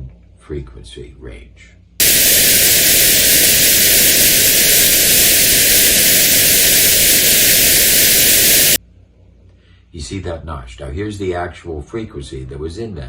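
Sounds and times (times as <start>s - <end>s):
notched white noise hiss: 2.0s - 8.8s.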